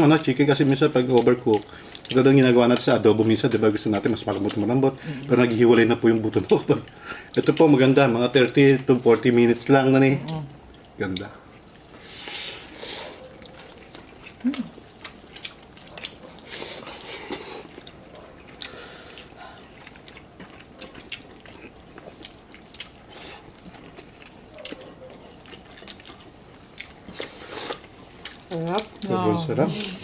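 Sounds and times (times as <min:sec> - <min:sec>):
person chewing food: 0:00.8 - 0:30.0.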